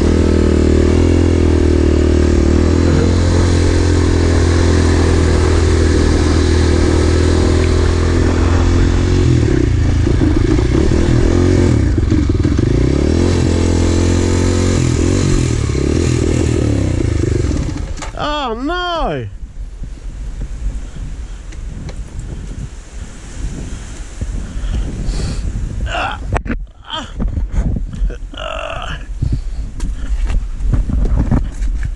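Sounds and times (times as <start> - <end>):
vehicle engine running: 0.0 - 18.2.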